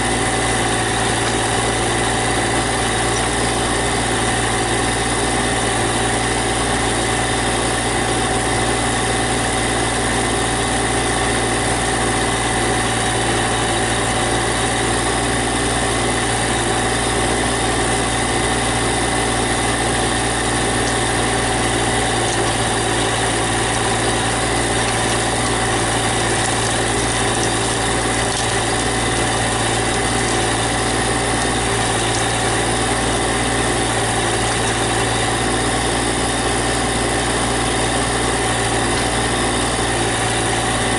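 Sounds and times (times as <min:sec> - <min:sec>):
tractor engine running: 0:00.0 - 0:40.9.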